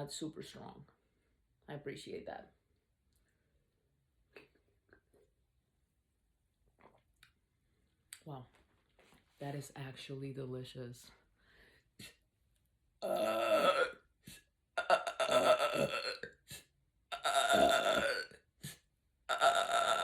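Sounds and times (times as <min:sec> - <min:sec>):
woman belching: 0:13.0 - 0:14.0, 0:14.8 - 0:16.3, 0:17.1 - 0:18.4, 0:19.3 - 0:20.0.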